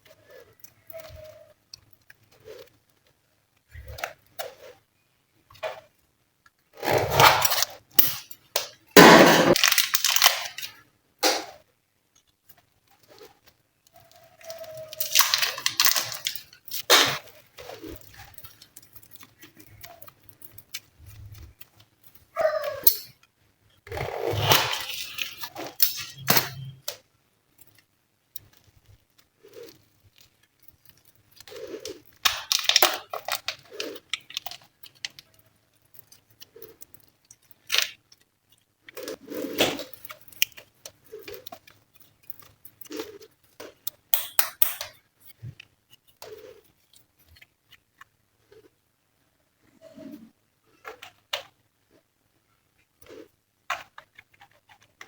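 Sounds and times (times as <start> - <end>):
slime crackling and popping: 7.2 - 11.4, 12.2 - 22.2, 27.6 - 45.0.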